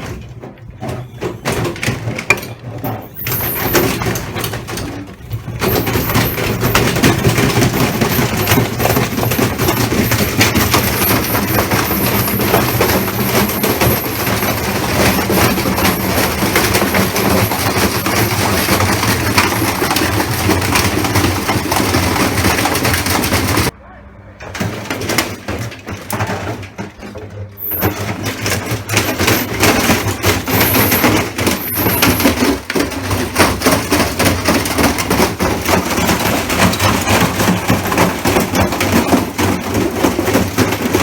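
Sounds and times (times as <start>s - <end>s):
heavy objects knocking in washer drum: 0.0s - 23.8s, 24.5s - 41.0s
washing machine low hum: 0.0s - 23.8s.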